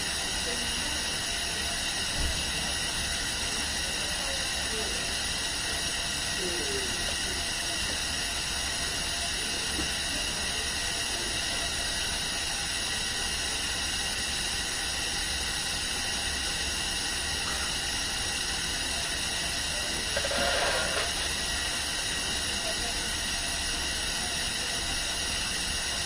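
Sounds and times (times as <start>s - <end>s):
steady hiss: 16.4s - 25.9s.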